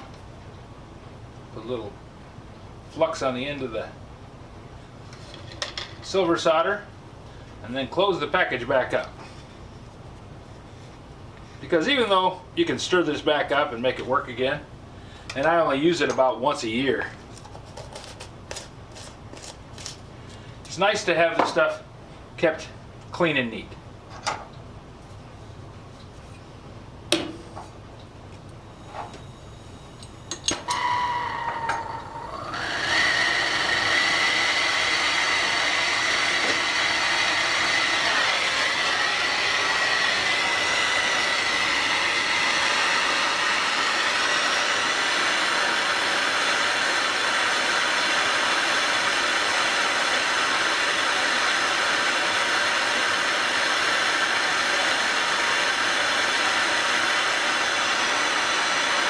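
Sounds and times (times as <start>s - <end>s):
gas torch hissing and whistling: 32.5s - 59.0s.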